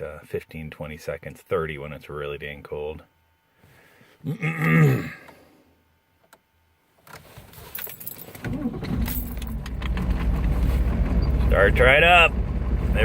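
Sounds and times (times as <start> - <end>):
keys jangling: 7.6 - 9.6
diesel engine cranking and starting: 8.4 - 13.0
diesel engine running: 8.4 - 13.0.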